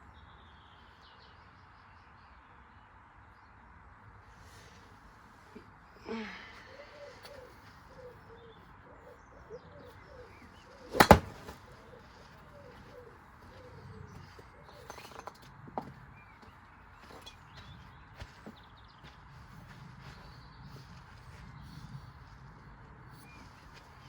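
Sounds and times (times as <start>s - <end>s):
faint bird calls: 4.4s - 15.2s.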